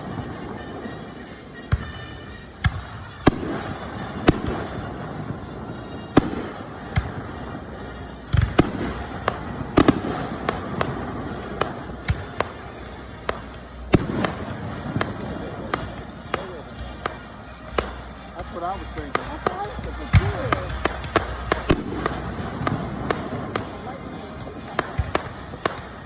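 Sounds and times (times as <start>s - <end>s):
fireworks exploding: 0.0s - 26.0s.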